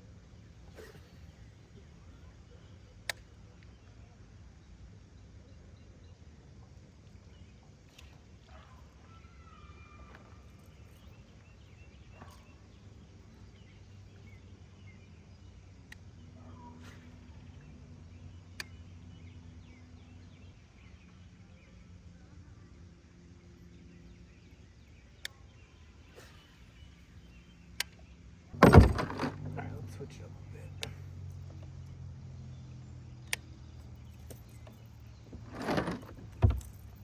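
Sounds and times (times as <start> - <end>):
sharp clicks: 33.2 - 33.6.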